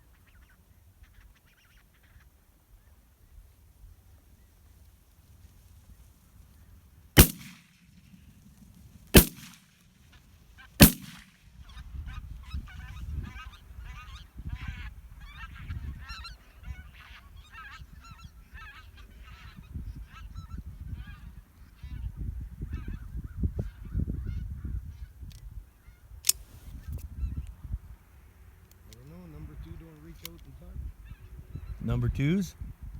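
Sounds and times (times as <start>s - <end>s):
shotgun shots: 7.2s - 7.8s, 9.1s - 9.7s, 10.8s - 11.4s
geese honking: 11.6s - 22.1s
wind rumbling on microphone: 11.6s - 32.9s.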